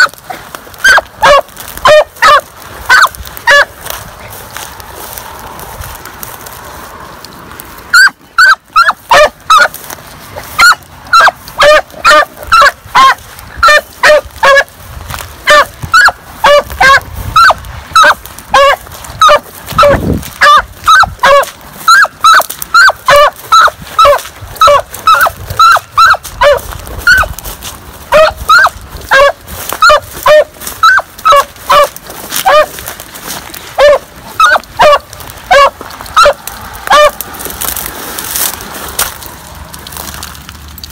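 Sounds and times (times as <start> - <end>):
hound baying: 0.0 - 3.8, 7.9 - 9.8, 10.5 - 14.7, 15.4 - 27.4, 28.0 - 32.9, 33.8 - 37.2.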